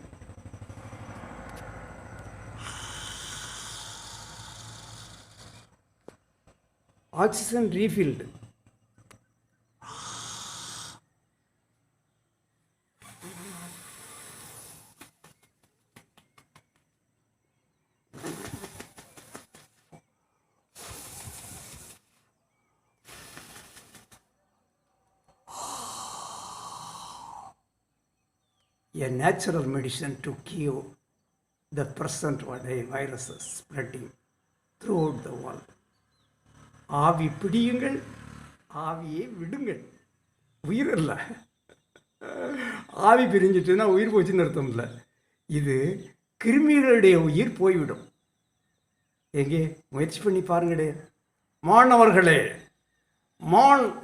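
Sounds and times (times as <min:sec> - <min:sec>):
man breathing deeply: 0:02.4 - 0:05.9, 0:09.8 - 0:11.1, 0:13.1 - 0:15.0, 0:25.4 - 0:27.7.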